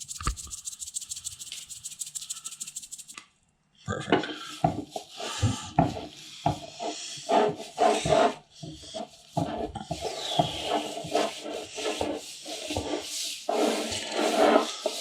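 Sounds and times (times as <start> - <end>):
hands rubbing seasoning into meat: 0.0 - 3.2.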